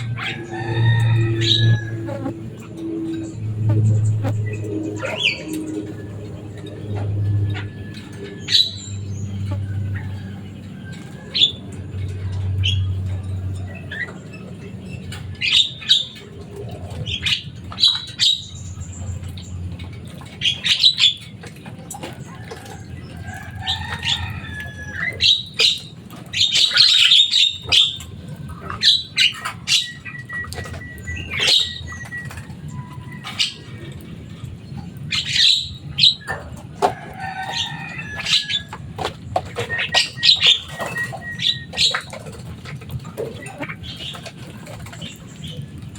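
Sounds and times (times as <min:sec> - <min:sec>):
myna chattering calls: 0:00.0 - 0:14.2.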